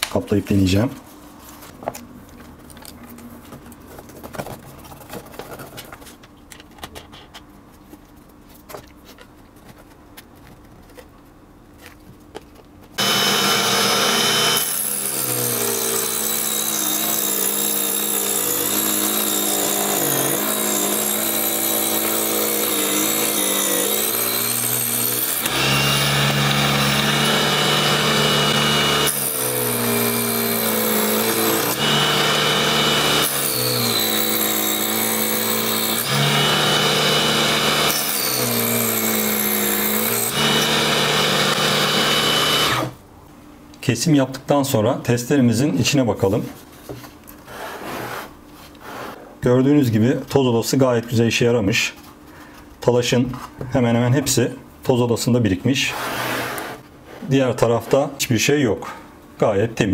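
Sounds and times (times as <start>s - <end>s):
small table saw cutting: 13.0s - 43.0s.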